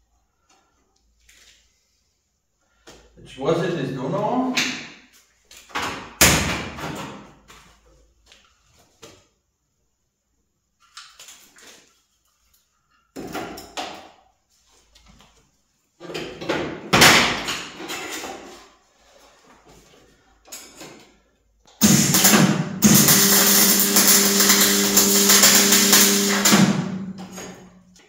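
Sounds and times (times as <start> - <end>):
welding buzz: 21.8 - 27.7.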